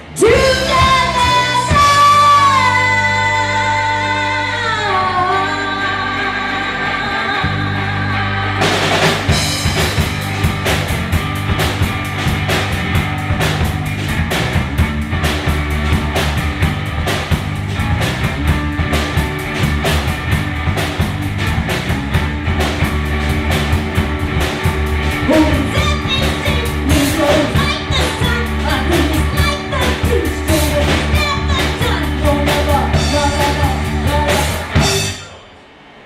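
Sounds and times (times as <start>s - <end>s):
person singing: 0.0s - 8.7s, 25.2s - 35.2s
rock band playing: 0.0s - 35.5s.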